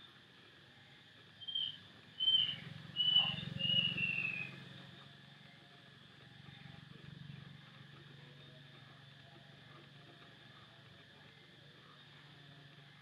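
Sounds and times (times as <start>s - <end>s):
bird whistling: 1.4s - 5.0s.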